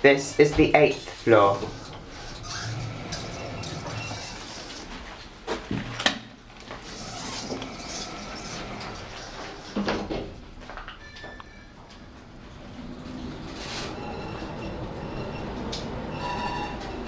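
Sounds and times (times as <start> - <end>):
lift doors sliding open: 0.4 - 17.0
lift door clunks: 0.5 - 6.4.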